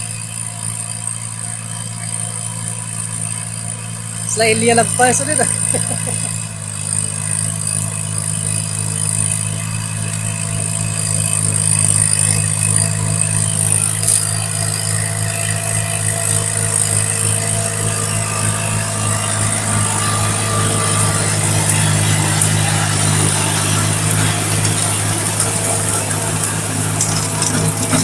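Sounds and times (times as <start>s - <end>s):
tractor engine idling: 0.0s - 28.0s.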